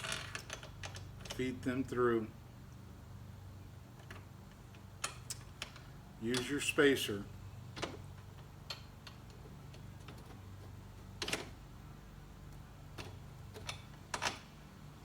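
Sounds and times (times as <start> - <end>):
low steady hum: 0.0 - 15.0
metal bolt clicks and taps: 7.8 - 10.2.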